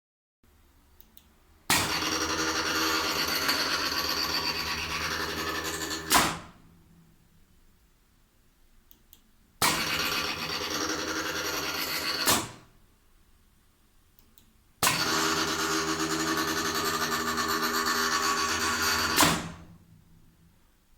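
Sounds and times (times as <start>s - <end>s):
lathe turret motor running: 1.7s - 6.2s, 9.7s - 12.3s, 14.8s - 19.6s.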